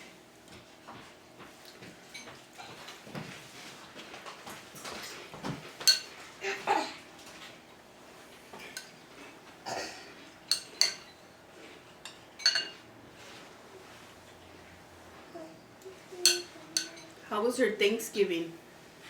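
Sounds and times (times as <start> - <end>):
cutlery scraping: 5.8 - 6.1, 8.6 - 9.0, 10.5 - 11.2, 12.0 - 13.4, 16.2 - 17.2
cutlery clinking on a dish: 5.8 - 6.2, 8.6 - 9.0, 10.5 - 11.2, 12.0 - 12.8, 16.2 - 17.2.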